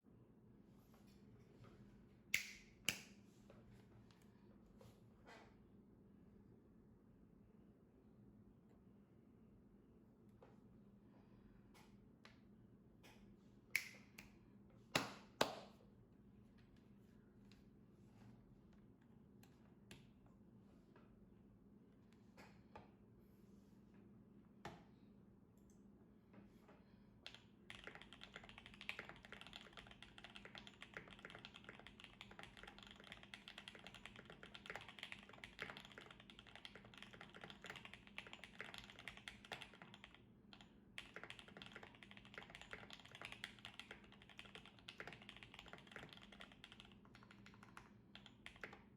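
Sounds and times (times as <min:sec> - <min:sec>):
mechanical keyboard typing: 0:27.3 - 0:48.9.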